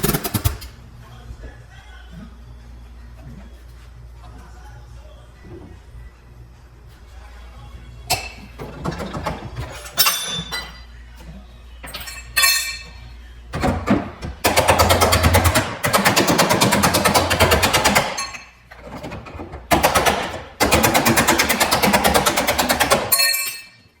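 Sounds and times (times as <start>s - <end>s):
pneumatic air tool hammering: 0.0s - 0.7s, 13.6s - 18.4s, 19.7s - 23.2s.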